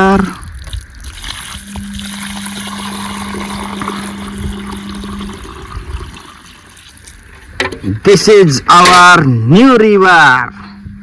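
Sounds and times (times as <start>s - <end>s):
water pouring and trickling: 0.0s - 7.7s
steady low hum: 0.0s - 11.0s.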